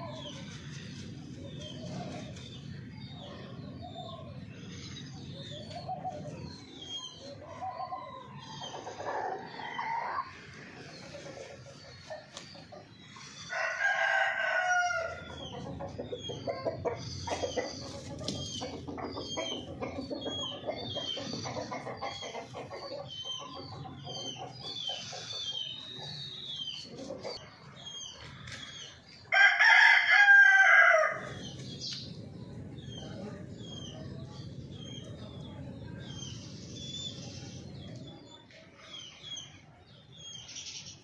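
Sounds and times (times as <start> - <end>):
small birds chirping: 0.0 - 29.4, 31.2 - 41.0
rooster crowing: 13.5 - 15.2, 29.3 - 31.3.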